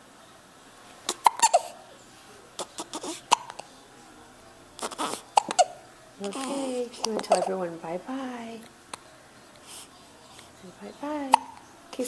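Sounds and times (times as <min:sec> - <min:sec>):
baby hiccupping: 0:01.0 - 0:01.8, 0:02.6 - 0:03.8, 0:04.8 - 0:07.6, 0:10.4 - 0:11.8.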